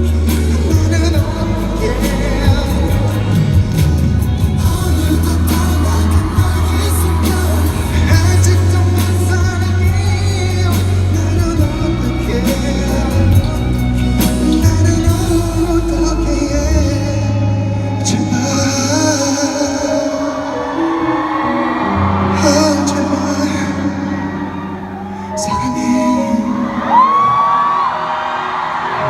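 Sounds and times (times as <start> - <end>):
heavy bass line: 0.0 - 19.0
live pop music with singing: 0.0 - 29.0.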